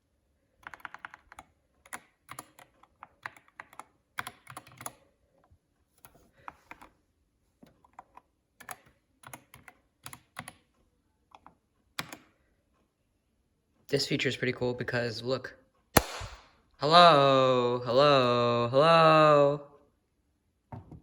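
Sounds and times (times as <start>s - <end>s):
clicky mechanical keyboard typing: 0.6s - 5.0s, 7.8s - 10.7s, 11.3s - 12.4s.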